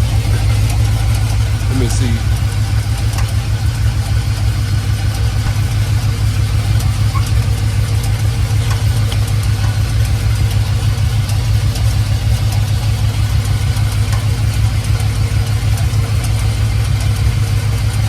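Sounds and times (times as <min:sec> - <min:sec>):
engine idling: 0:00.0 - 0:18.0
light ticking: 0:00.0 - 0:18.0.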